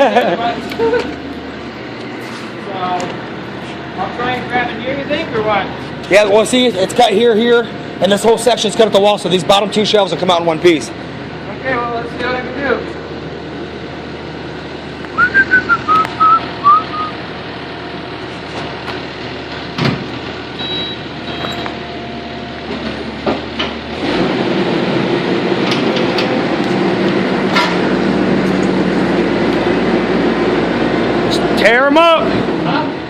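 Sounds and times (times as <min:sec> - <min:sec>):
diesel engine running and revving: 0:00.0 - 0:33.0
high wavering chirps: 0:15.2 - 0:17.2.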